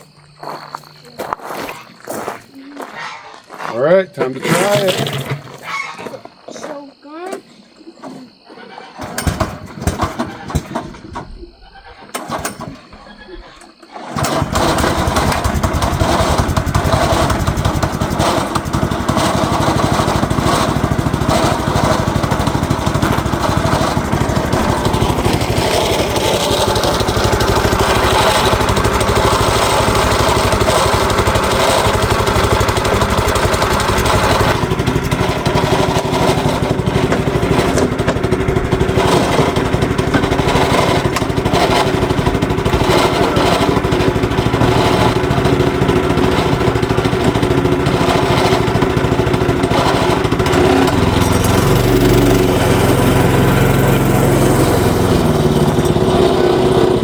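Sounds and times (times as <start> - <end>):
engine running steadily: 14.2 - 57.0.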